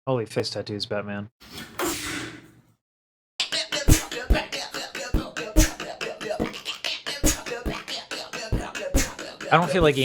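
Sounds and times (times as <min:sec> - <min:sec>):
person beatboxing: 0:03.4 - 0:10.0.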